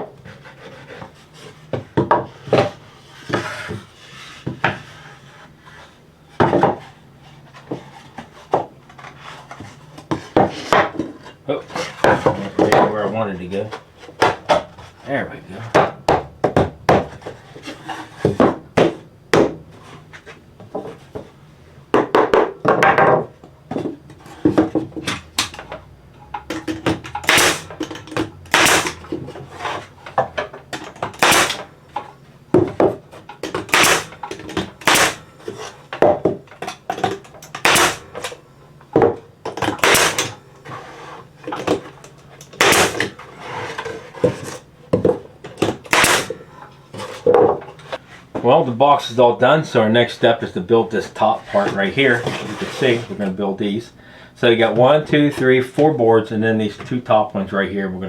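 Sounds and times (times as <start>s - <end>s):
boards clattering: 6.4s - 6.9s, 7.5s - 15.0s, 15.6s - 21.3s, 21.9s - 48.6s
sharp wooden impacts: 26.4s - 29.4s, 30.1s - 31.7s, 32.5s - 35.2s, 37.0s - 38.3s, 39.0s - 40.3s, 42.5s - 43.2s, 45.6s - 46.4s.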